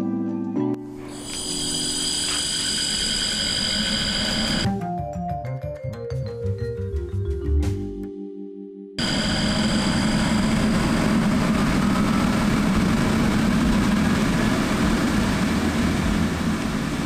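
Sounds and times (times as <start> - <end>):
blower rushing air with low hum: 1.0 - 4.7, 9.0 - 17.0
faint rising whine: 1.0 - 4.7, 9.0 - 17.0.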